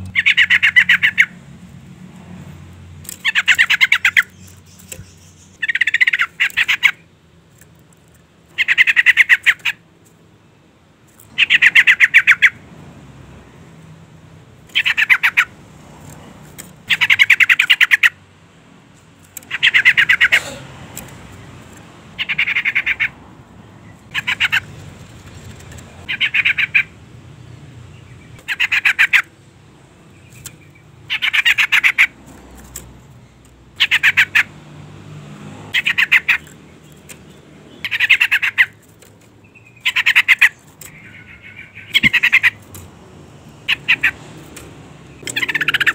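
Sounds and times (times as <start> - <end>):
bird chattering call: 0.0 - 1.4, 3.1 - 7.1, 8.5 - 9.8, 11.3 - 12.6, 14.7 - 15.6, 16.9 - 18.2, 19.4 - 20.6, 22.1 - 23.2, 24.1 - 24.8, 25.4 - 27.0, 28.0 - 29.4, 30.2 - 32.2, 33.8 - 34.5, 35.7 - 38.8, 39.4 - 42.7, 43.6 - 44.2, 45.2 - 45.9.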